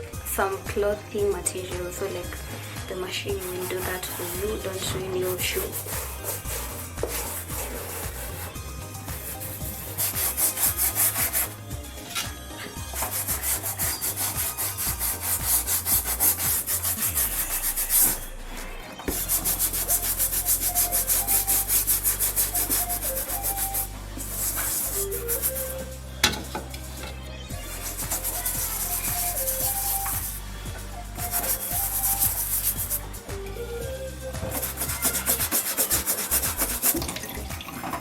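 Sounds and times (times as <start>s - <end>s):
toothbrush scrubbing a sneaker: 2.2s - 26.0s, 27.6s - 30.5s, 31.1s - 33.2s, 34.4s - 37.3s.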